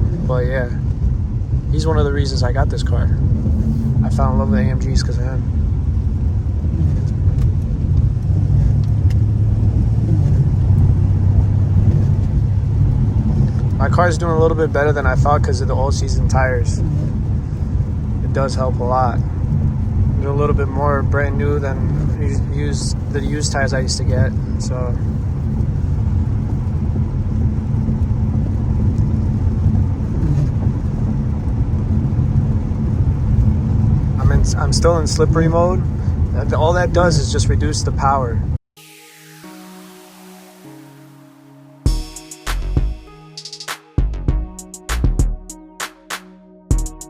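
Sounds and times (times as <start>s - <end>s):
road noise: 0.0s - 42.5s
car engine cruising drone: 0.0s - 43.1s.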